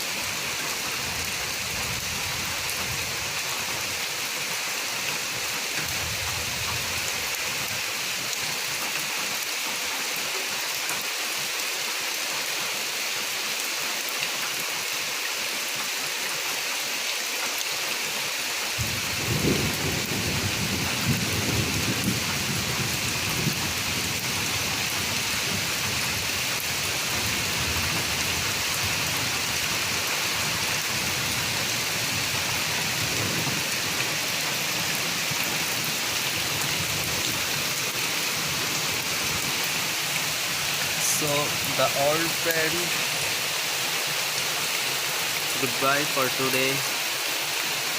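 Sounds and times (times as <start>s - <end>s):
steady rain: 0.0s - 47.9s
rumble of thunder: 18.8s - 24.3s.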